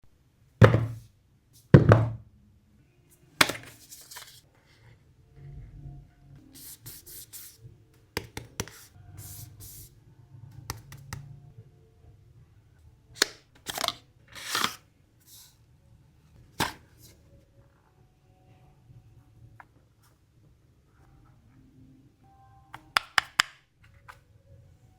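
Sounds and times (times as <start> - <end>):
cardboard and plastic taps: 0.6 - 1.0, 22.8 - 23.6.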